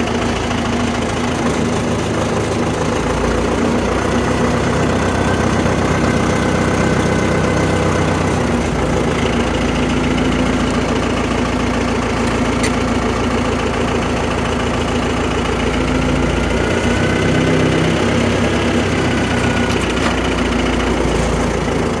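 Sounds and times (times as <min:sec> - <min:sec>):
backhoe engine running: 0:00.0 - 0:22.0.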